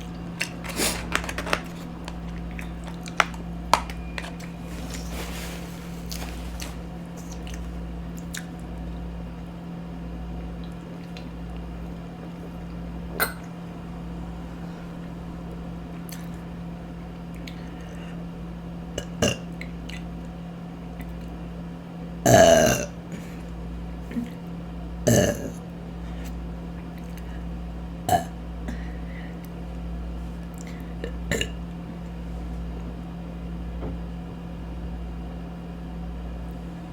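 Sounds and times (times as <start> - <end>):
steady low hum: 0.0 - 36.9
woman burping loudly: 22.3 - 23.0, 25.1 - 25.6.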